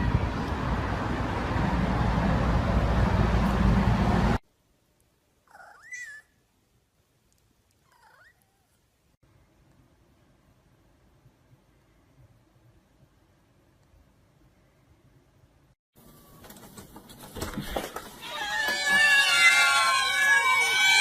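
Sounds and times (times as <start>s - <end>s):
cat meowing: 5.5s - 6.3s, 7.9s - 8.8s, 18.2s - 21.0s.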